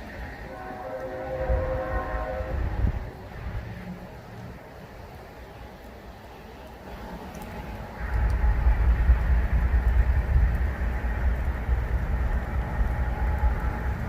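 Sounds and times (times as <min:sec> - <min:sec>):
train passing rumble: 0:00.0 - 0:14.0.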